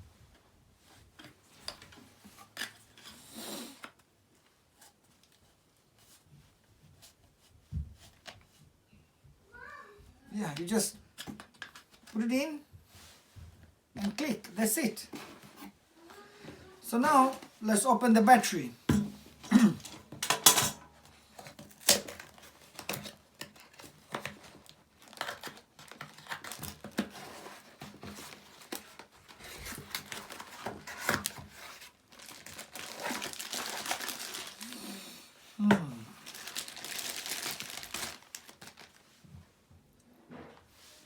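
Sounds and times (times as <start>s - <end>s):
handling clicks and knocks: 18.9s - 22.2s
packaging crinkling and tearing: 21.3s - 35.2s, 36.1s - 39.2s.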